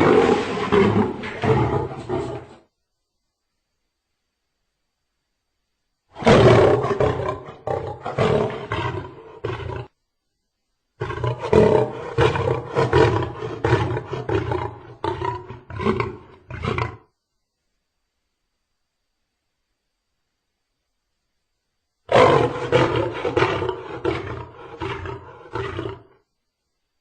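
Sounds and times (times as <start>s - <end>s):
lion roaring and snarling: 0.0s - 2.6s, 6.2s - 9.9s, 11.0s - 17.0s, 22.1s - 26.1s.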